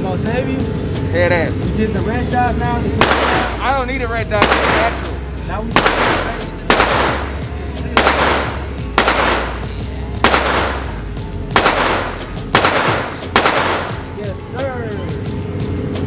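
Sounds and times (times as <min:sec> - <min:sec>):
gunshots with echoing tail: 0:03.0 - 0:03.8, 0:04.4 - 0:14.2.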